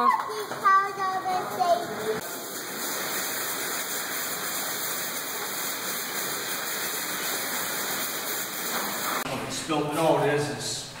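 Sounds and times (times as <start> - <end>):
rushing hiss: 2.2 - 9.2.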